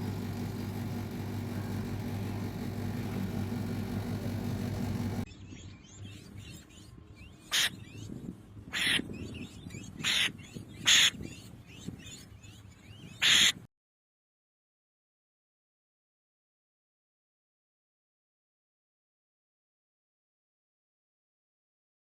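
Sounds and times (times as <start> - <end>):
low engine-like hum: 0.0 - 7.3
bird harsh calls: 5.9 - 13.6.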